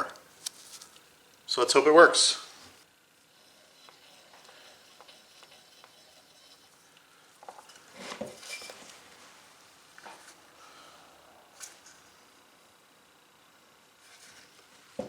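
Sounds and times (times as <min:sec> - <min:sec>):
metal parts clinking and rubbing: 0:08.4 - 0:08.9.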